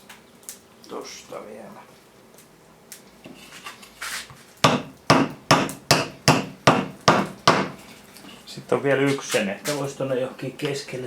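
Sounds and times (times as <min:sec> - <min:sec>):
hammer knocking wooden peg: 0:04.6 - 0:07.8.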